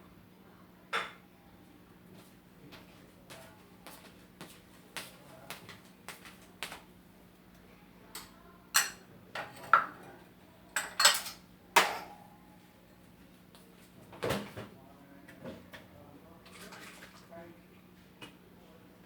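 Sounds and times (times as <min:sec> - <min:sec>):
dishes and cutlery clinking: 0:08.2 - 0:10.2, 0:10.8 - 0:12.2.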